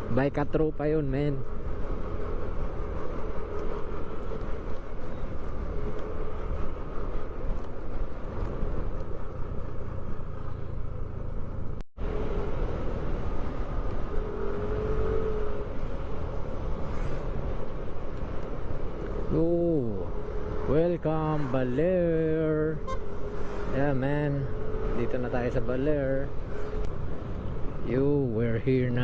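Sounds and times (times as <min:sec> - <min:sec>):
road and wind noise: 0:00.0 - 0:29.0
motorcycle engine drone: 0:01.4 - 0:20.8.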